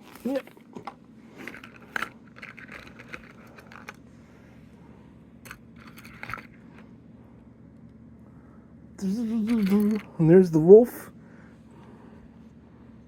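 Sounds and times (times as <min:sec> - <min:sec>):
scratchy rustling and scraping: 0:01.2 - 0:04.1.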